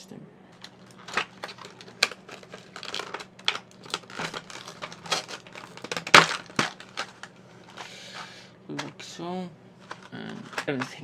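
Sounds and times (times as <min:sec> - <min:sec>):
plastic packaging crinkling and cracking: 0:00.6 - 0:08.9, 0:09.8 - 0:11.0.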